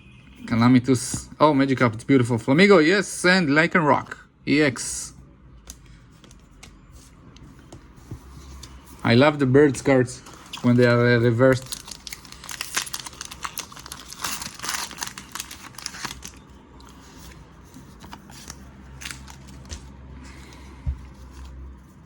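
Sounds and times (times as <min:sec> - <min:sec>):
foil wrapper crinkling and tearing: 0:10.2 - 0:17.0, 0:18.0 - 0:19.9.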